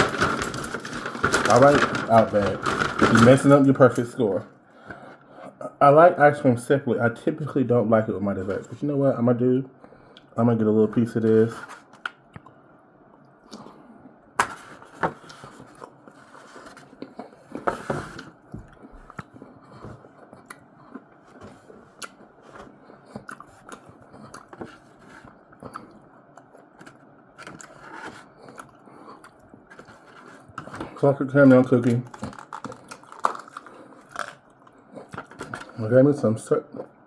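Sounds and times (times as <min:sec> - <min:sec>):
person chewing: 0:23.0 - 0:26.9, 0:32.2 - 0:35.4.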